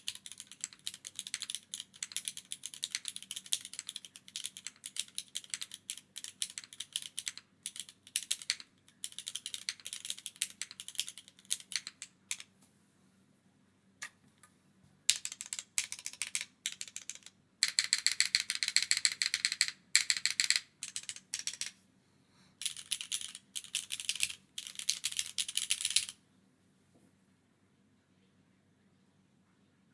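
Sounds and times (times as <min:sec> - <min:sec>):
fast typing on mechanical keyboard: 0:00.0 - 0:12.5, 0:15.1 - 0:21.8, 0:22.6 - 0:26.2.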